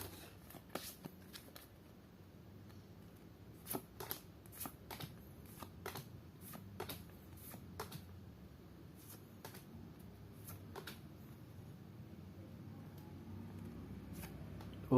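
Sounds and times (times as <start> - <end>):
cards being flicked: 3.6 - 8.1, 9.1 - 9.7, 10.5 - 11.1.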